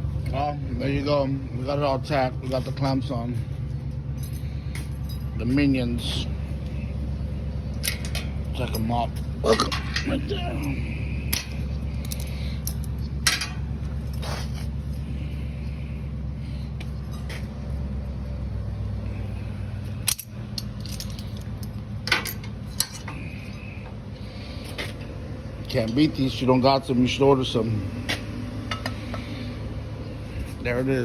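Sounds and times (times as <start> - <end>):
steady low hum: 0.0 - 31.0
metal clamps clinking and knocking: 7.8 - 10.3, 11.3 - 14.2, 20.0 - 23.2, 28.7 - 29.2.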